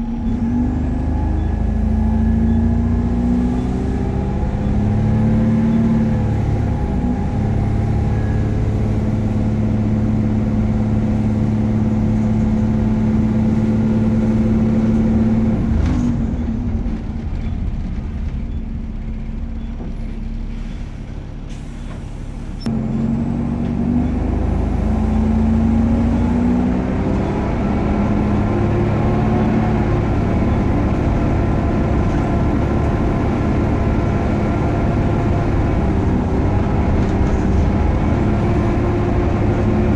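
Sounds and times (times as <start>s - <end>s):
bus engine with high whine: 0.0s - 39.9s
air brake release: 20.5s - 22.7s.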